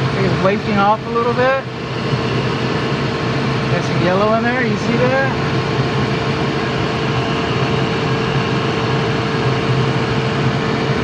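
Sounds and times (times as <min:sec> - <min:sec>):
constant hum: 0:00.0 - 0:11.0
gas furnace running: 0:00.0 - 0:11.0.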